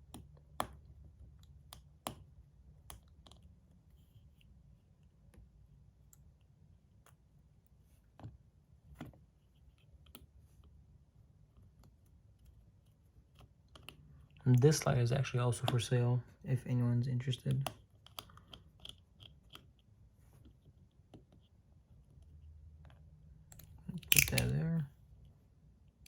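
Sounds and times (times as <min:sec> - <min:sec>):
small metal parts clicking: 0:23.6 - 0:24.5.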